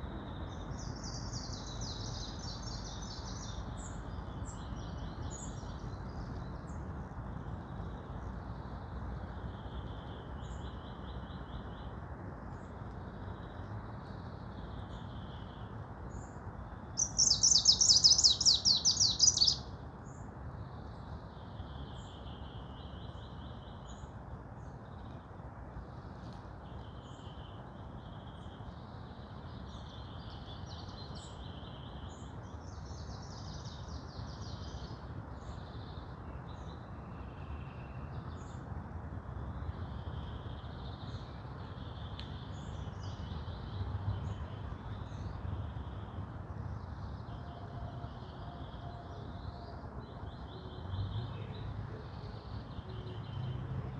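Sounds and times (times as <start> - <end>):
low background noise: 0.0 - 53.9
songbirds singing: 0.0 - 53.9
fast trilling birdsong: 17.0 - 19.7.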